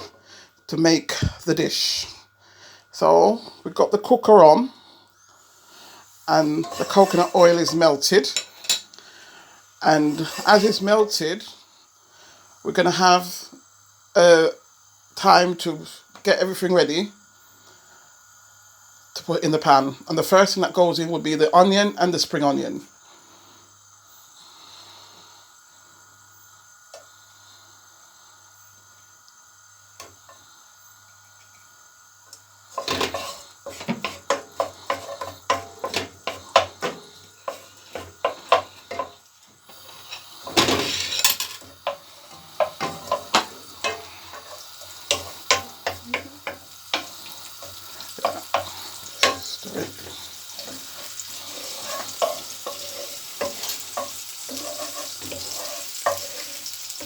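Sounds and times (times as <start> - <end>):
onion sizzling in a pan: 0.0 - 57.0
utensil scraping a pan: 6.2 - 8.8, 9.8 - 11.2, 32.7 - 57.0.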